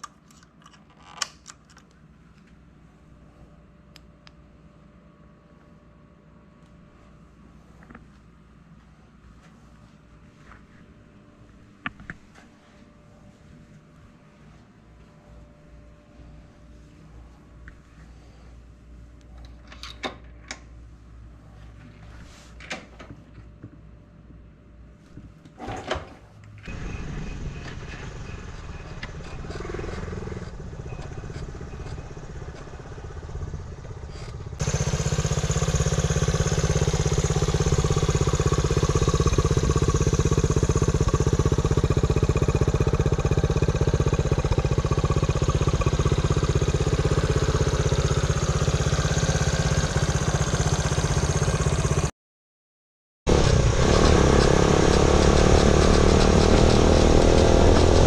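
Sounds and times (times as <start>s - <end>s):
small engine running: 26.7s - 52.1s, 53.3s - 58.0s.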